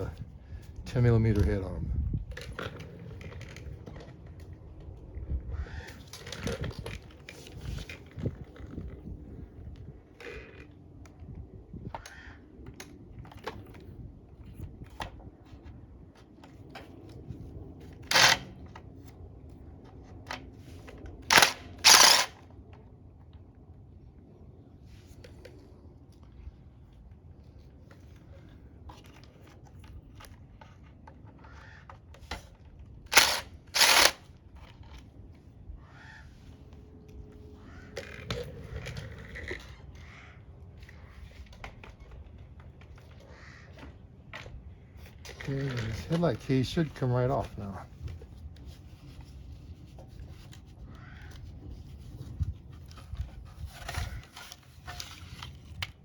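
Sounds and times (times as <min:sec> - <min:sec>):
hand tools clicking on metal: 0:33.1 - 0:34.2
scraping and rustling handling noises: 0:36.4 - 0:56.0.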